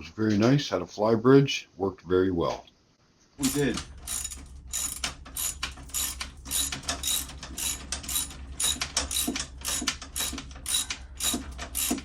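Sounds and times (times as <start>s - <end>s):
ratchet wrench clicking: 3.4s - 12.0s.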